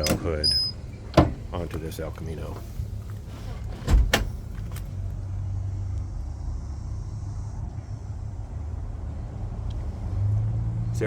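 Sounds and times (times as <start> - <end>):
car engine idling rumble: 0.0 - 11.0.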